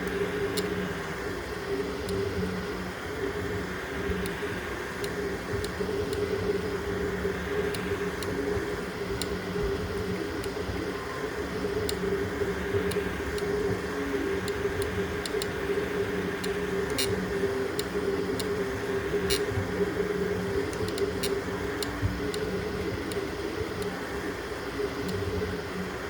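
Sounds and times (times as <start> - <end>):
small clicks: 0.0 - 0.9, 14.3 - 19.8, 20.4 - 25.4
fan noise: 0.0 - 26.0
printer motor hum: 0.0 - 26.0.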